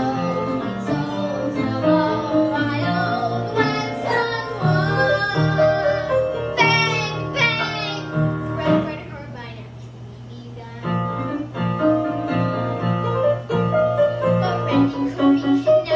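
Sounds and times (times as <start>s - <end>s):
singing with instrumental music: 0.0s - 8.9s.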